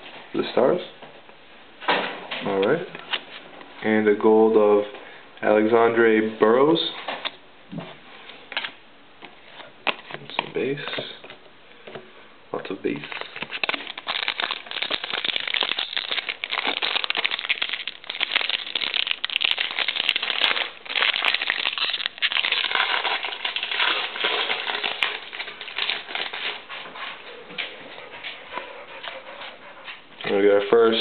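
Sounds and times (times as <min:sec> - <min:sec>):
foil wrapper crinkling: 0:12.9 - 0:26.7.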